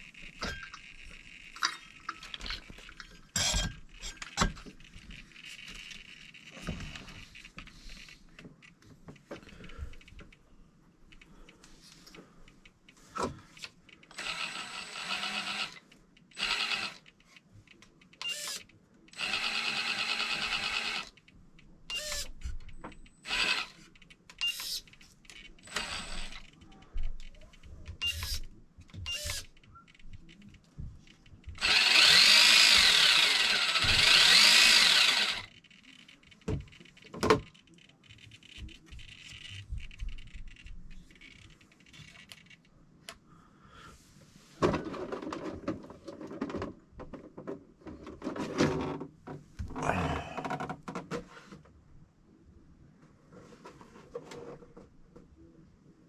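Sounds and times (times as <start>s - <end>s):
small electric motor whirring: 14.1s - 17.1s, 18.2s - 18.6s, 19.2s - 21.2s, 21.9s - 22.3s, 23.2s - 23.8s, 24.4s - 26.6s, 28.0s - 28.5s, 29.1s - 29.6s, 31.6s - 36.1s.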